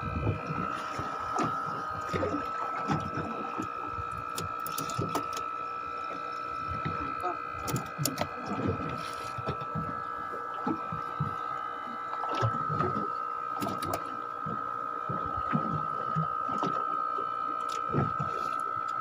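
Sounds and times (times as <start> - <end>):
high mechanical whine: 0.0 - 19.0.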